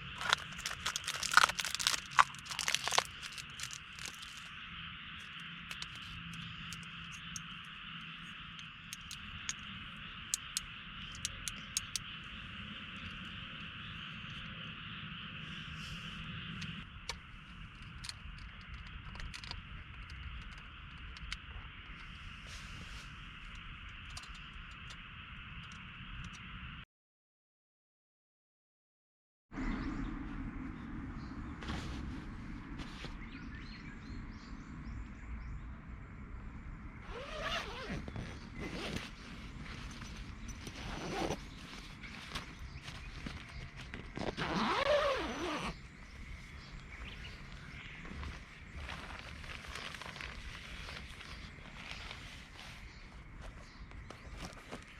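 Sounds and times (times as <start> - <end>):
campfire wood crackling: 0.0 - 12.2, 46.7 - 52.9
small birds chirping: 0.0 - 25.9, 37.0 - 54.9.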